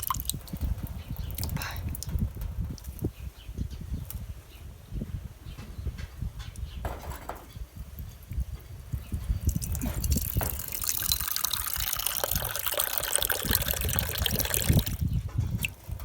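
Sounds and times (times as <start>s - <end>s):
water pouring: 0.0s - 3.0s, 9.4s - 16.0s.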